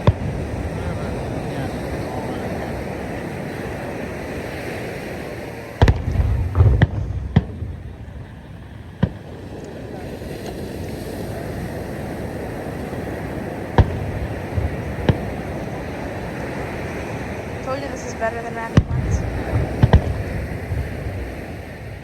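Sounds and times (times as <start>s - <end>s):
fireworks bangs: 0.0s - 22.0s
steady background noise: 0.0s - 22.0s.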